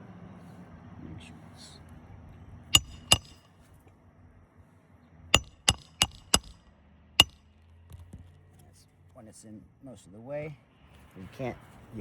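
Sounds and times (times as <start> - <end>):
hammer striking metal nailing tool: 2.8 - 3.4, 5.4 - 6.6.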